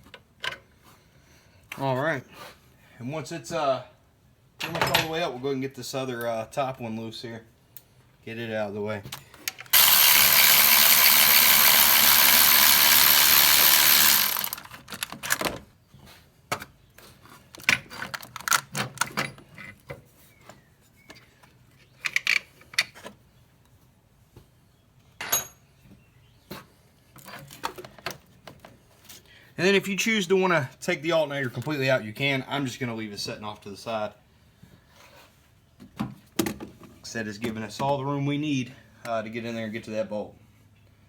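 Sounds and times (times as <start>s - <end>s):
power tool spinning bolt: 9.7s - 15.0s.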